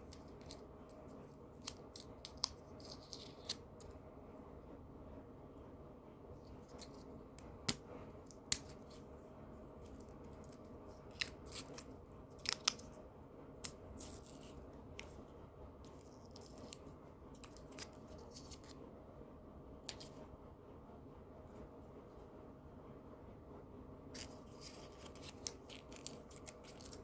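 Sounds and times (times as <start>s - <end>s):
candy packaging crinkling: 0.0s - 3.9s, 9.8s - 13.0s, 13.6s - 15.1s, 15.9s - 18.8s, 24.1s - 27.0s.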